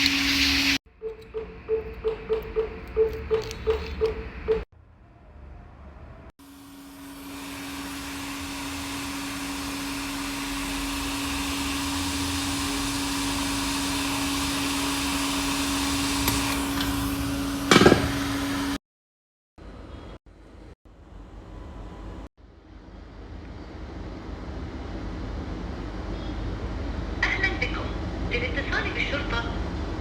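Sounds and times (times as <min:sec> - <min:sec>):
hot-air blower hum and hiss: 0:00.0 - 0:00.8, 0:06.4 - 0:18.8.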